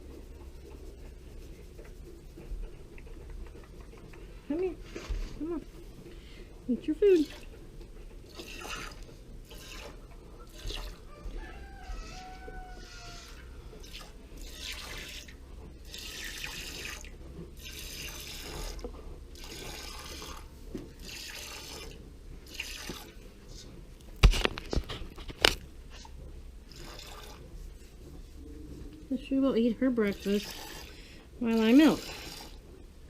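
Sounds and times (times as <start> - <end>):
milk squirting into a pail: 8.3 - 11.0, 12.8 - 23.2, 26.7 - 27.4.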